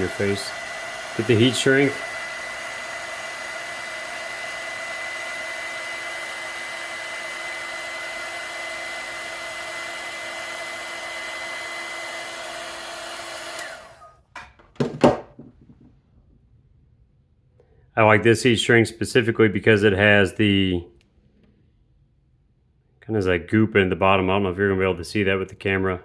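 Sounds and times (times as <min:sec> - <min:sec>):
heat gun blowing with whine: 0:00.0 - 0:14.2
sharp knocks: 0:14.4 - 0:16.0.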